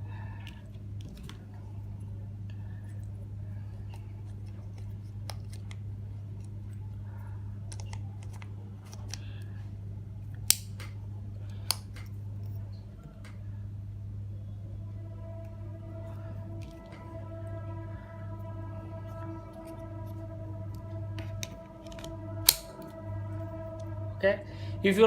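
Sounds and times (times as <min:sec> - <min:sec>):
steady low hum: 0:00.0 - 0:25.0
small plastic clicks and handling: 0:07.7 - 0:09.4.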